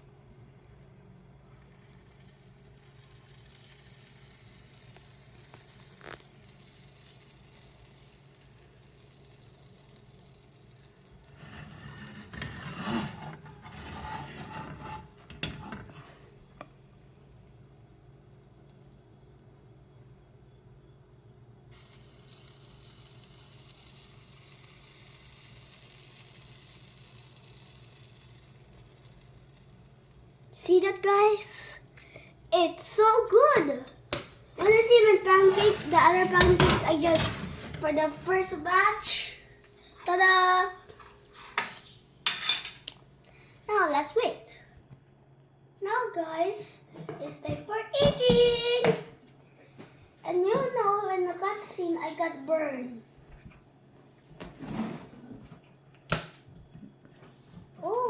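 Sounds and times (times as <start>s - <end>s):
batter sizzling in oil: 0.0s - 15.3s, 16.1s - 37.1s
scrape in a pan: 11.2s - 16.3s, 34.6s - 38.5s.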